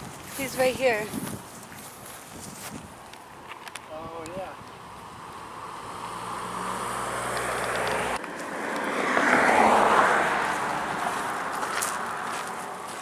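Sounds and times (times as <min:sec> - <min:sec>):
passing vehicle rushing: 0:04.8 - 0:13.0.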